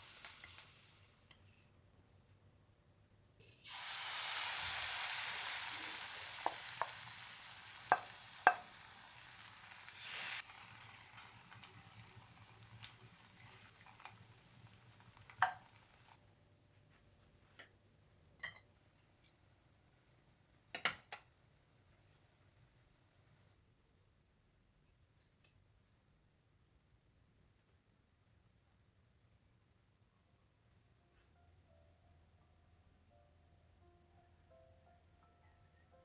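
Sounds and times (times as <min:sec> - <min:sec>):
food sizzling in a frying pan: 0:00.0 - 0:01.2, 0:03.4 - 0:16.2
utensil tapping a pan: 0:06.3 - 0:07.2, 0:07.9 - 0:08.8, 0:15.3 - 0:15.7.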